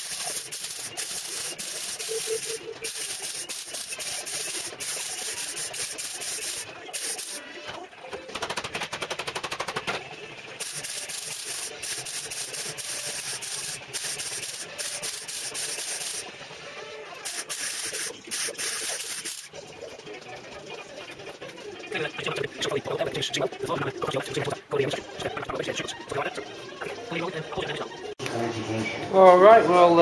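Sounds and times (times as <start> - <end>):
welding arc crackling: 0.0 - 7.5, 10.4 - 16.3, 17.2 - 19.6
rapid even popping: 8.2 - 16.2.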